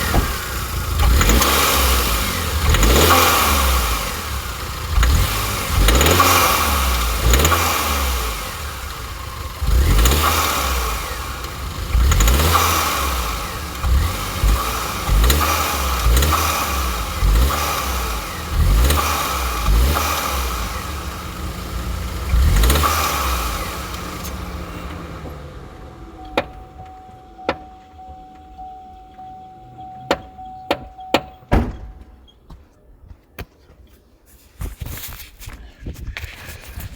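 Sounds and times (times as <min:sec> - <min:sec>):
car engine revving: 0:00.0 - 0:28.6
faint steady tone: 0:26.0 - 0:32.3.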